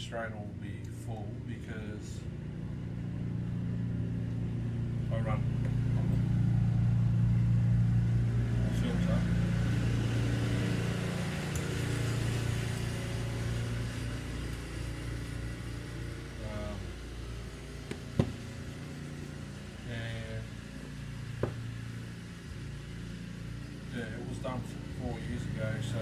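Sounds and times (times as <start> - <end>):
low engine hum: 0.0 - 26.0.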